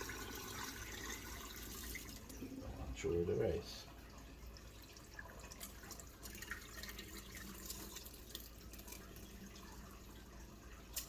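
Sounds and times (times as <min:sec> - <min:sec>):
water dripping from draining rice: 0:03.6 - 0:11.0.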